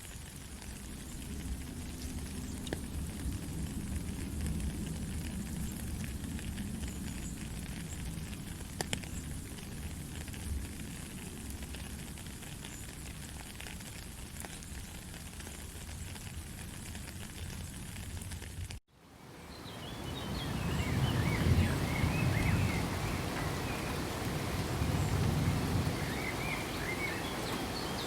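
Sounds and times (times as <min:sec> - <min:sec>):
raindrop ticks: 0:00.0 - 0:18.8
steady rain hiss: 0:00.0 - 0:28.0.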